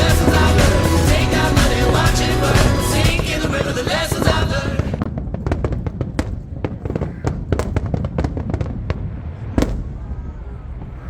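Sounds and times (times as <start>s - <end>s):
fireworks cracks and bangs: 0.0s - 11.0s
low rumble: 7.4s - 11.0s.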